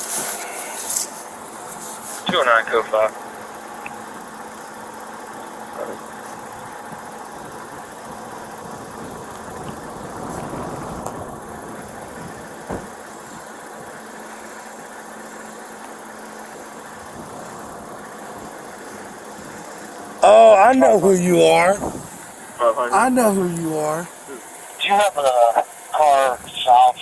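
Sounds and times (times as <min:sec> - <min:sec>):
vehicle engine idling: 0:00.0 - 0:27.0.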